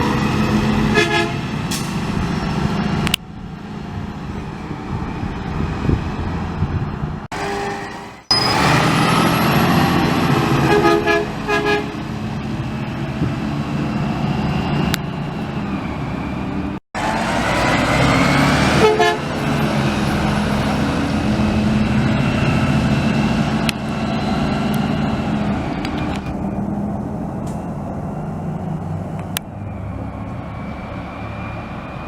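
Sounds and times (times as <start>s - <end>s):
brakes squealing: 7.3s - 32.0s.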